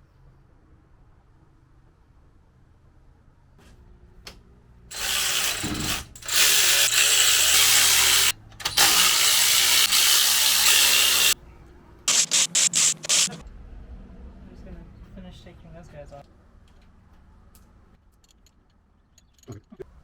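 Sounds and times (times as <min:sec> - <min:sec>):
cordless power tool running: 0:04.9 - 0:11.4.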